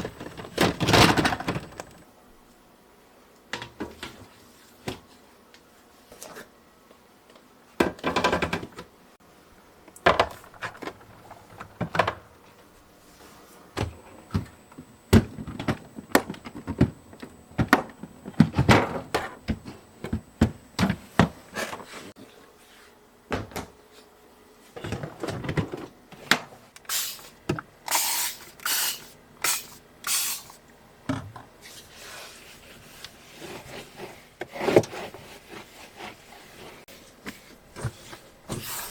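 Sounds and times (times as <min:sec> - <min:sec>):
items knocking and clicking: 0:00.0 - 0:02.0, 0:07.8 - 0:08.8, 0:09.9 - 0:12.4, 0:13.8 - 0:21.8, 0:24.8 - 0:26.5.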